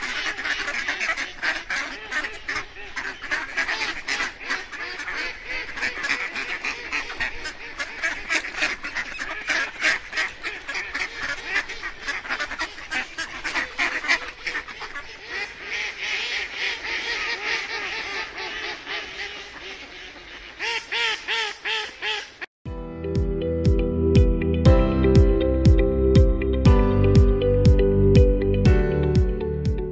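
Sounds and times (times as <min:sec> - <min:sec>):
flock of ducks quacking: 0:00.0 - 0:22.5.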